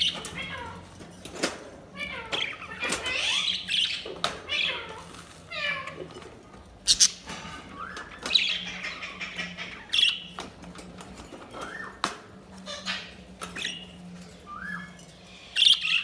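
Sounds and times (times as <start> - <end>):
budgerigars chirping and warbling: 0.0 - 16.0.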